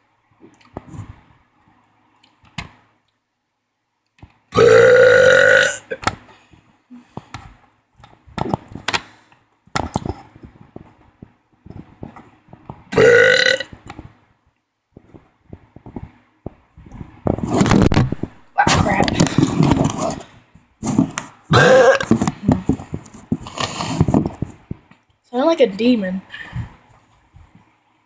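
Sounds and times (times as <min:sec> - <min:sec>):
person burping loudly: 0:04.5 - 0:06.1, 0:12.9 - 0:13.8, 0:21.5 - 0:22.2.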